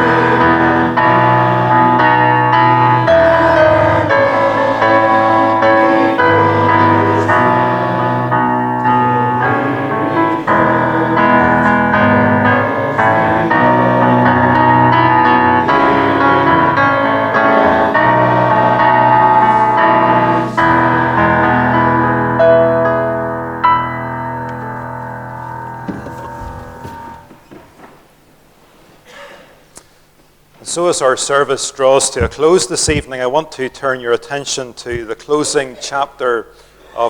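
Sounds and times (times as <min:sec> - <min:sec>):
slow sustained keyboard chords: 0:00.0 - 0:27.4.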